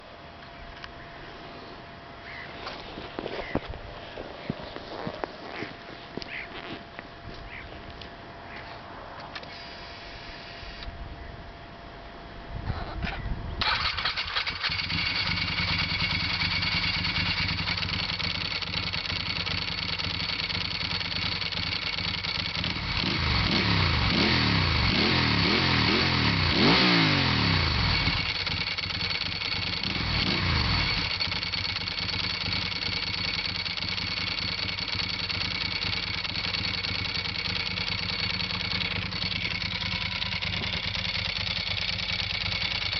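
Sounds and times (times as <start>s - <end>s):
motorcycle engine idling: 13.6s - 42.9s
motorcycle engine revving: 13.6s - 42.9s.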